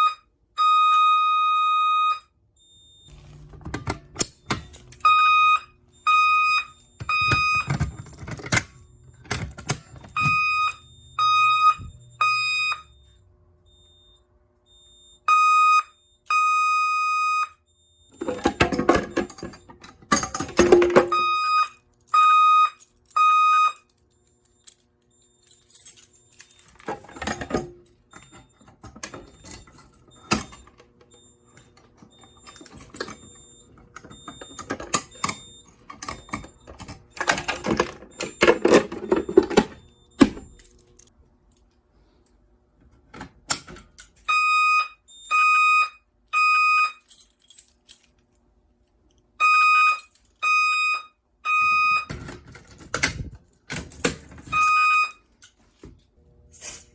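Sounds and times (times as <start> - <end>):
fire alarm horn blasts: 0.0 - 3.5, 4.2 - 19.7, 20.6 - 23.9, 26.3 - 40.4, 44.2 - 47.1, 49.4 - 52.4, 54.4 - 55.3
clattering and knocking of devices: 3.1 - 5.2, 6.7 - 10.9, 18.1 - 22.2, 24.6 - 41.1, 42.8 - 44.3, 51.6 - 56.2.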